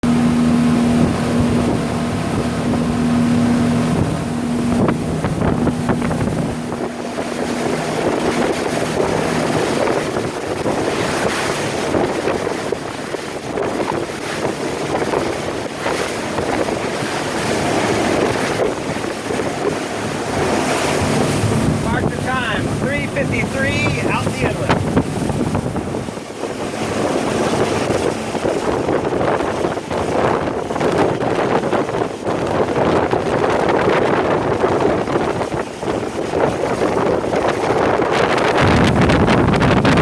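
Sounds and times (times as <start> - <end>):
water rushing past: 0.0 - 31.4
motorboat engine hum: 0.0 - 40.0
wind buffeting microphone: 0.0 - 40.0.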